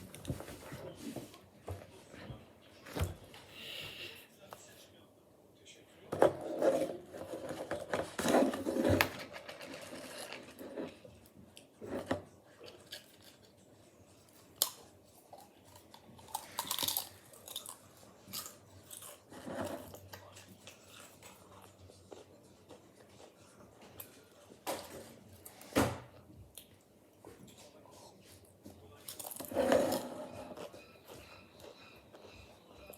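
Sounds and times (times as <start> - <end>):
person crunching potato chips: 15.7 - 19.2.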